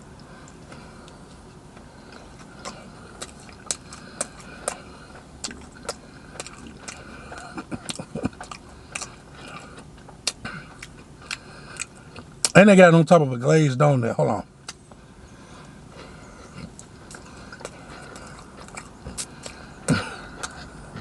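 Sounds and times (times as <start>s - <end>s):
chewing doughnut: 0.2s - 12.6s, 15.9s - 21.0s
wet mouth clicks and lip smacks: 2.6s - 4.8s.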